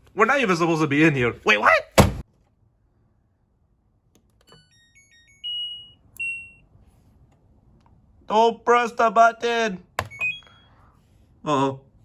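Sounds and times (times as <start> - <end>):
control panel beeping: 4.5 - 6.6, 10.0 - 10.5.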